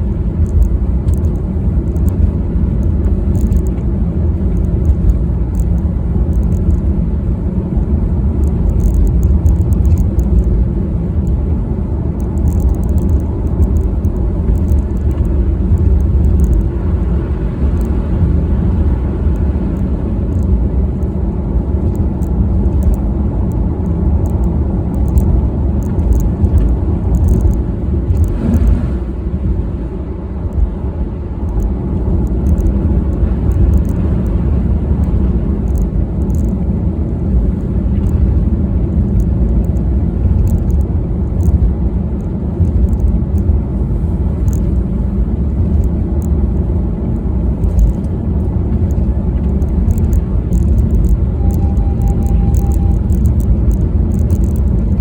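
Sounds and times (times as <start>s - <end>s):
car engine and tyre rumble: 0.0s - 55.0s
faint crackles: 12.2s - 16.8s, 47.6s - 55.0s.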